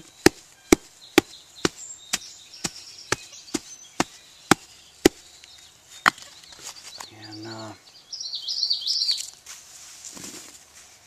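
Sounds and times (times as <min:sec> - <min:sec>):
sharp strikes packing soil: 0:00.0 - 0:05.2.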